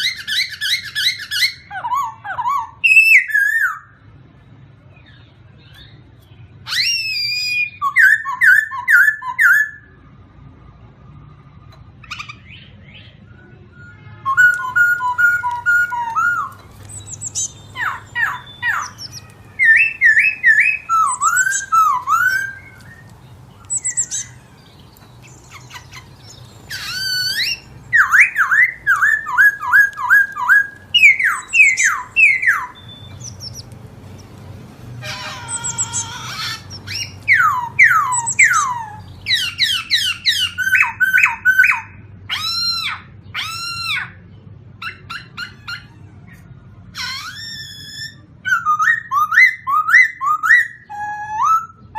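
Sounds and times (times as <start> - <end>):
songbirds whistling notes: 0.0 - 4.0, 5.0 - 10.0, 11.2 - 51.9
harsh buzzy bird call: 14.3 - 44.1.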